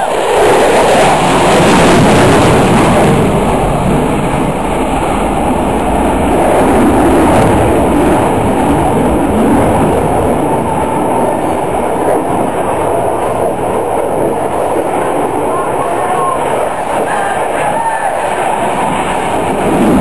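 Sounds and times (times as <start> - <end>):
fighter jet engine roar: 0.0 - 20.0.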